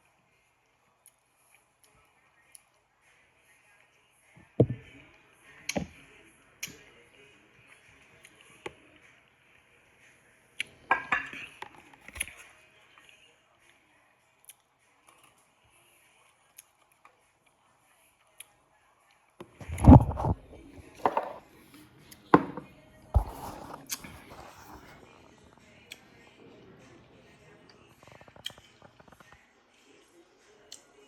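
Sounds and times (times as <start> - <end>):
dishes and utensils clattering: 10.9 - 12.0
kitchen clicks and knocks: 10.9 - 12.2, 19.6 - 21.4, 22.4 - 24.9.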